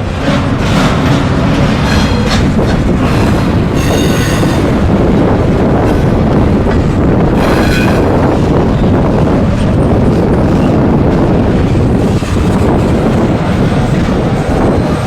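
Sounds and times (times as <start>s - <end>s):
train wheels rumbling on rail: 0.0s - 15.0s
high-pitched wheel squeals: 3.8s - 4.7s.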